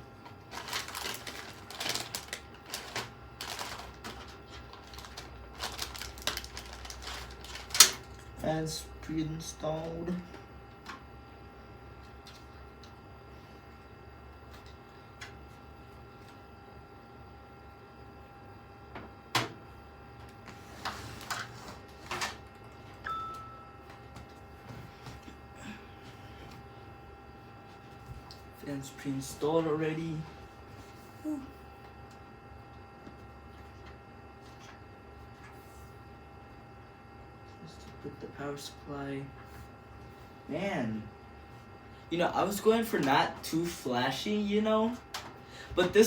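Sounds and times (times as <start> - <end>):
computer case parts clicking and rattling: 0.5 - 8.2
short ringing tone: 23.0 - 23.9.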